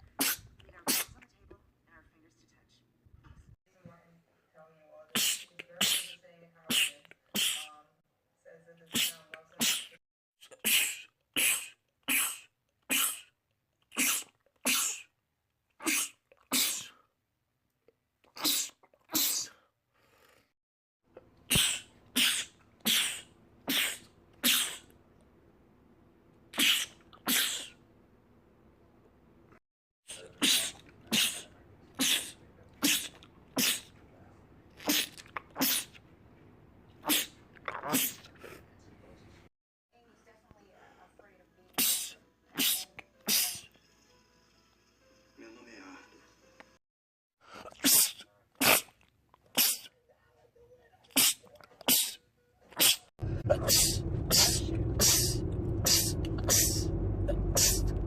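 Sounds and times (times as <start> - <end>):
men sneezing: 5.2 - 7.7, 8.9 - 13.3, 13.9 - 15.1, 15.8 - 17.0, 18.4 - 19.6, 21.5 - 24.9, 26.6 - 27.8, 30.1 - 33.9, 34.8 - 36.0, 37.0 - 38.2, 41.8 - 43.7, 47.5 - 48.9, 49.6 - 49.9, 51.2 - 52.2.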